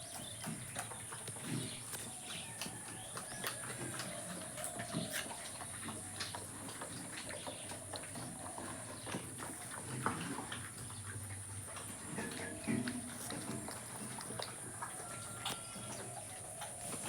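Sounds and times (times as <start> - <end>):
low pig sounds: 3.8 - 17.0.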